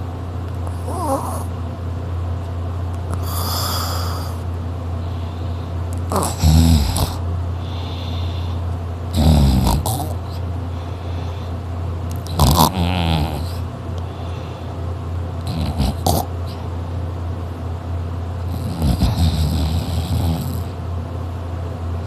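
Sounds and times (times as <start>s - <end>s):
person snoring loudly: 0.7s - 1.5s, 3.1s - 4.4s, 6.1s - 10.3s, 12.2s - 13.6s, 15.4s - 16.6s, 18.4s - 20.8s
hissing breath: 3.1s - 6.2s, 7.6s - 8.7s.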